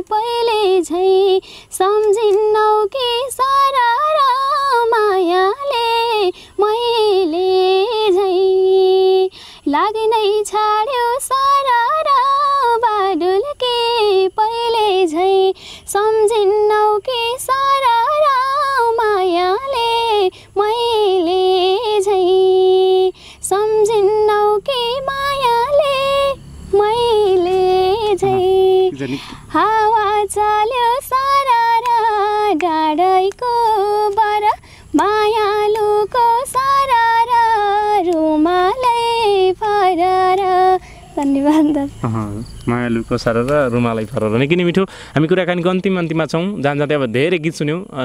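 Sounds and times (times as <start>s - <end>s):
woman singing unaccompanied: 0.0s - 42.0s
woman breathing: 1.4s - 1.8s, 6.3s - 6.6s, 9.3s - 9.7s, 15.6s - 15.9s, 20.3s - 20.6s, 23.1s - 23.4s, 29.0s - 29.6s, 34.6s - 35.0s, 40.8s - 41.2s, 44.9s - 45.2s.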